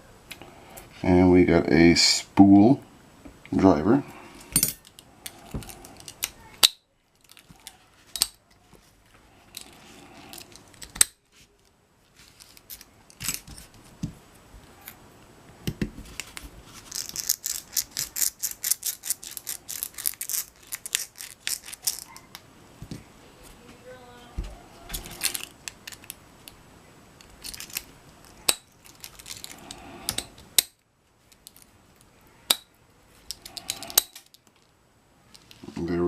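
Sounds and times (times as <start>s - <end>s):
metal tools clicking on padlock: 33.3s - 34.5s.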